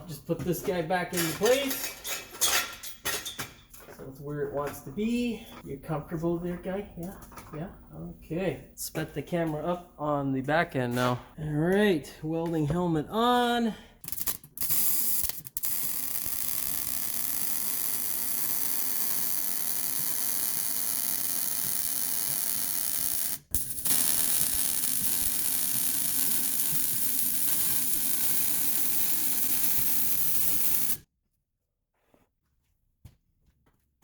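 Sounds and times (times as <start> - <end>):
welder crackling and hissing: 14.0 - 31.1.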